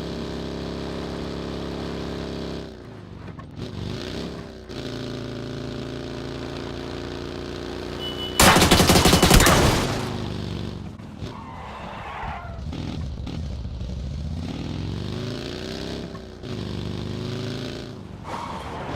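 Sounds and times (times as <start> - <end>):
engine revving with rapid cracking: 3.4 - 11.4.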